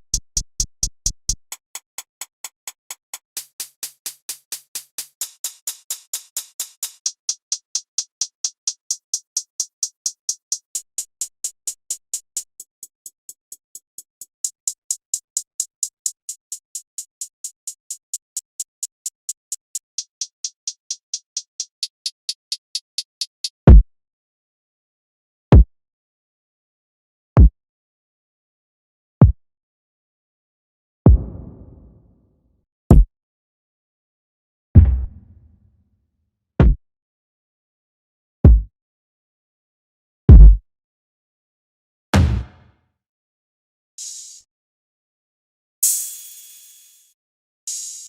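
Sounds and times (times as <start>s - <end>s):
hi-hat ticks: 0.0s - 23.8s, 44.0s - 44.5s, 45.8s - 47.1s, 47.7s - 48.0s
deep kick drum hit: 31.1s - 31.6s, 34.8s - 35.2s, 40.3s - 40.6s, 42.2s - 42.6s.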